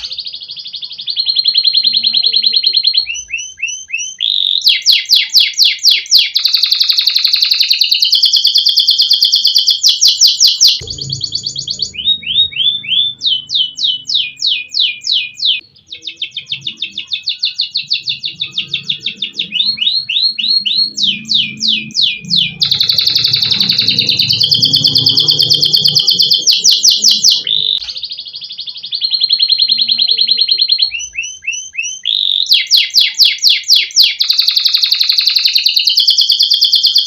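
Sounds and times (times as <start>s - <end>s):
canary singing trills: 0.0s - 37.0s
faint low rumble: 10.8s - 13.8s.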